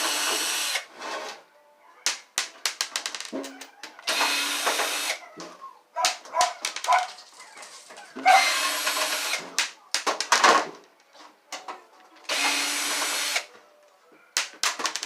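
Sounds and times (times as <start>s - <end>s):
electric drill running: 0.0s - 0.9s, 4.1s - 5.2s, 8.4s - 9.4s, 12.3s - 13.4s.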